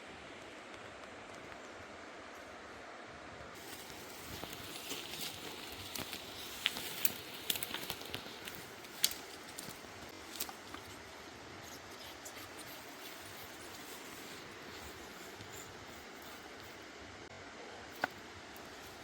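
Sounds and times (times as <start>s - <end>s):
rustling with sharp clicks: 3.6s - 16.8s.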